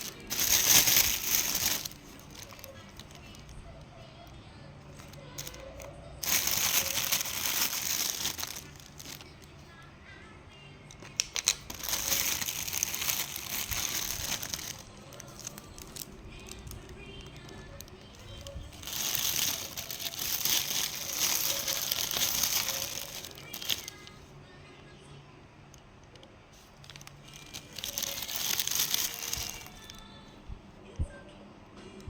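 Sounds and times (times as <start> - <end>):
crinkling rustling: 0.0 - 9.9, 10.9 - 24.2, 26.5 - 30.2.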